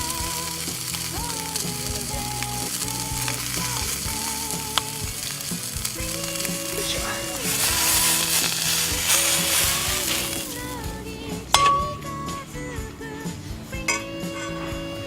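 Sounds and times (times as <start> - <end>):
food sizzling in a pan: 0.0 - 11.9
soft background music: 0.0 - 15.0.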